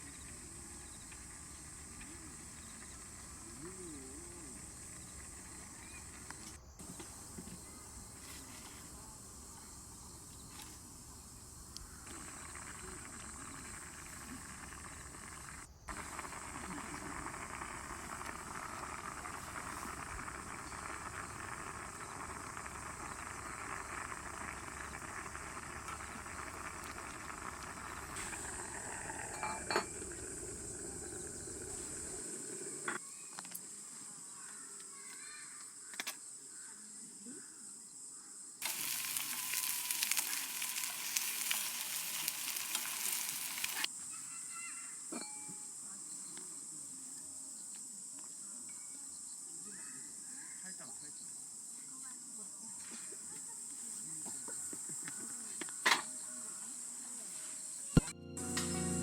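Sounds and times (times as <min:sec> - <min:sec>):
food sizzling in a pan: 0:09.8 - 0:32.4, 0:38.6 - 0:43.9.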